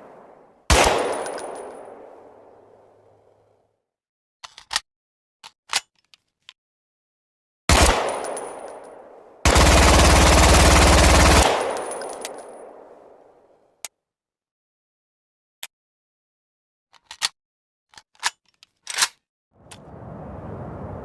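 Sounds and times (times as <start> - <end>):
single gunshot ringing: 0.0 - 2.4
automatic gunfire echoing: 0.0 - 2.7, 7.7 - 13.3
gun mechanical clicks: 4.4 - 4.8, 5.4 - 6.6, 16.9 - 19.8.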